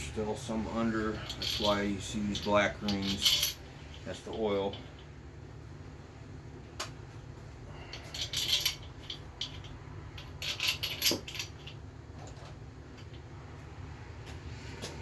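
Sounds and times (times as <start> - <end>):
steady low hum: 0.0 - 15.0
metal bolts clinking: 0.8 - 5.1, 7.9 - 13.2.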